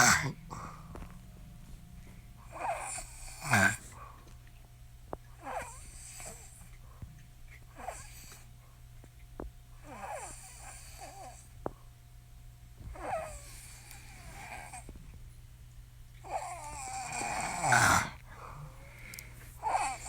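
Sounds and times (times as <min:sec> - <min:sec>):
woman snoring: 0:00.0 - 0:01.1, 0:02.5 - 0:04.0, 0:05.4 - 0:06.6, 0:09.8 - 0:11.5, 0:13.0 - 0:14.9, 0:16.2 - 0:18.2, 0:19.6 - 0:20.0.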